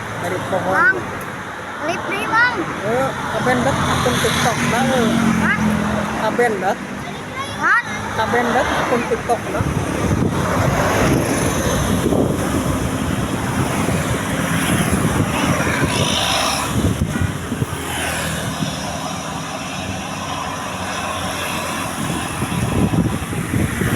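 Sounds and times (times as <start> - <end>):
heavy vehicle engine and road noise: 0.0 - 23.9
wind buffeting microphone: 8.1 - 23.9.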